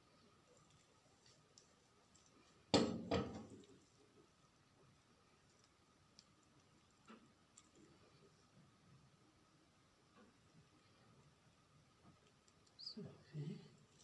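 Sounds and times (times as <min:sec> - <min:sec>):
sharp knocks of kitchen object: 0:02.7 - 0:03.4.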